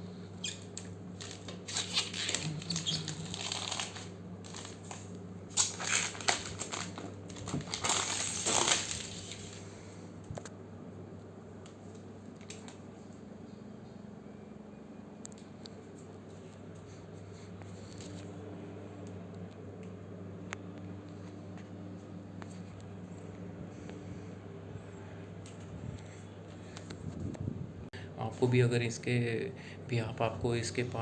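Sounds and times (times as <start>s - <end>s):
steady low hum: 0.0s - 31.0s.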